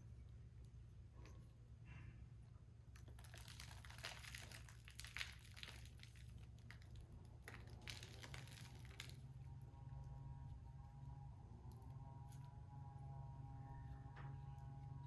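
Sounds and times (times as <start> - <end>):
low steady hum: 0.0 - 15.0
faint crinkling and rustling: 2.9 - 9.5
small crackles: 2.9 - 9.5.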